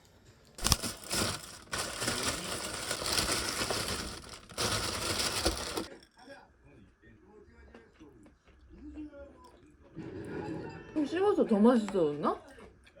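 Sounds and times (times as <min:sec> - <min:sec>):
loud crinkling and crushing: 0:00.6 - 0:05.9.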